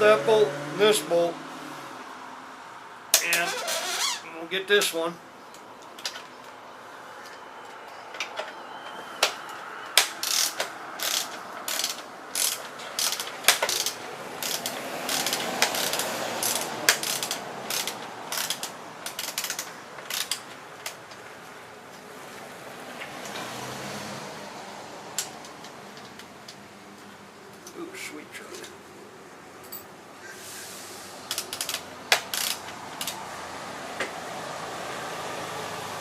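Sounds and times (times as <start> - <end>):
ratchet wrench clicking: 10.0 - 21.0, 31.3 - 33.2.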